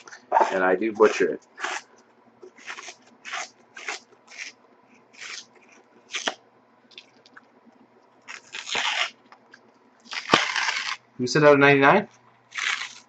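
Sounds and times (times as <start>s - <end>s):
cardboard tearing: 0.0s - 1.8s, 8.3s - 9.2s, 10.1s - 11.0s, 12.5s - 13.0s.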